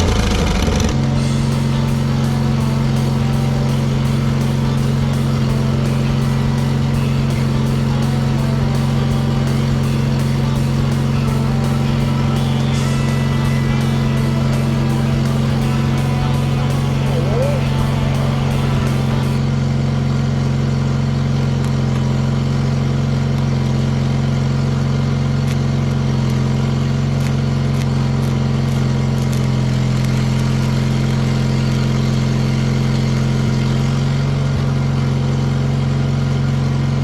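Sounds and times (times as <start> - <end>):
generator engine droning: 0.0 - 37.0.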